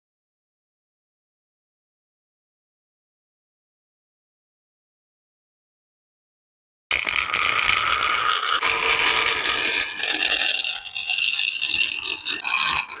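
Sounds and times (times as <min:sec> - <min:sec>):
marbles rattling down marble run: 0:06.9 - 0:13.0.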